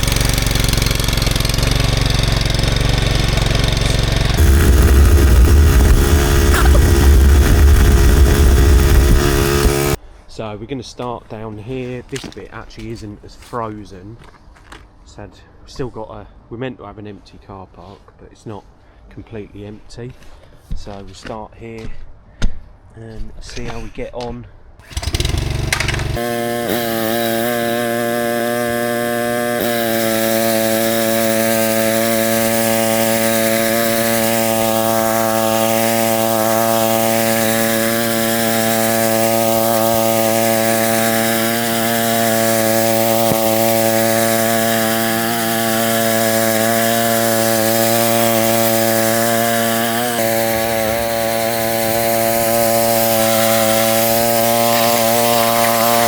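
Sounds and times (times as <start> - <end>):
engine drone: 0.0 - 10.0, 24.8 - 56.0
rotating brush scratching hiss: 1.3 - 10.0, 24.9 - 56.0.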